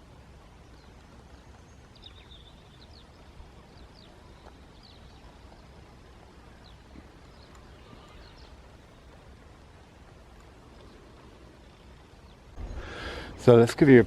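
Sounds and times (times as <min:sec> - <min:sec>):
faint birds chirping: 0:00.0 - 0:14.0
low background noise: 0:00.0 - 0:14.0.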